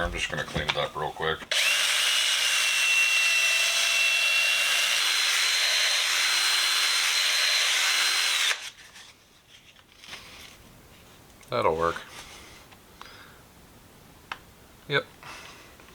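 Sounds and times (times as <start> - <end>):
power tool motor whine: 1.5 - 8.7.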